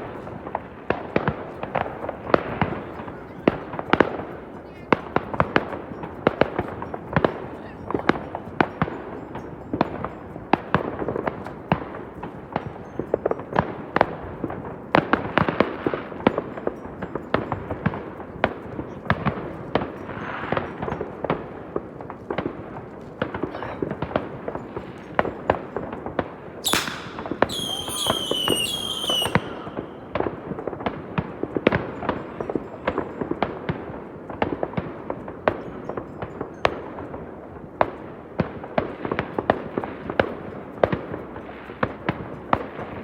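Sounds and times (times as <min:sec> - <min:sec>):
firecrackers crackling: 0:00.0 - 0:07.5, 0:19.1 - 0:32.2
fireworks bangs: 0:26.6 - 0:31.0.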